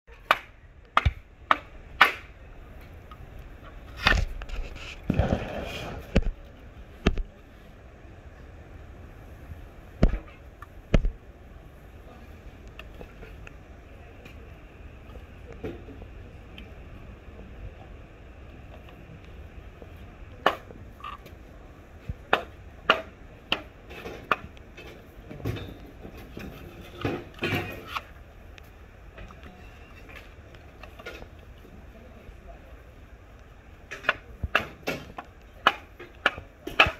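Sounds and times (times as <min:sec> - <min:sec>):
bamboo knocking and cracking: 0:00.1 - 0:02.4, 0:10.0 - 0:10.3, 0:22.3 - 0:25.6, 0:33.9 - 0:36.9
sharp knocks on bamboo: 0:00.2 - 0:02.3, 0:10.0 - 0:10.3, 0:22.3 - 0:23.7.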